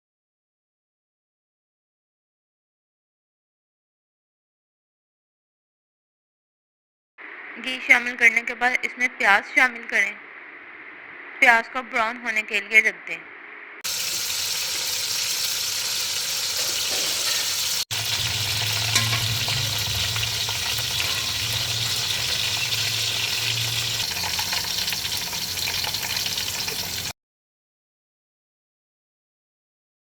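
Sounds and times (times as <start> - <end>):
low hum: 7.2 - 13.8, 17.9 - 27.1
onions sizzling in hot fat: 13.8 - 27.1.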